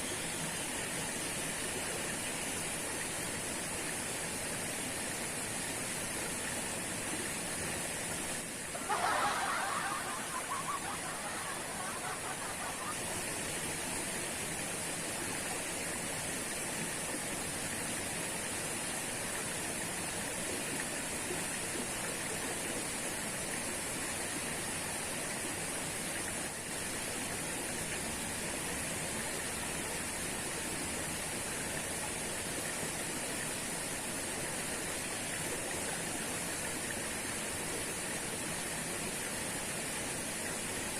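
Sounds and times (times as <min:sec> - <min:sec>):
waterfall roaring: 0:04.8 - 0:25.0.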